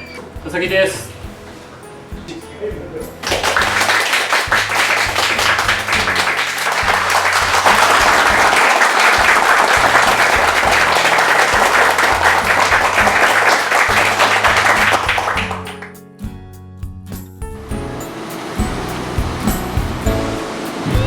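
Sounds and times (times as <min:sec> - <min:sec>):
applause: 0:03.2 - 0:16.0.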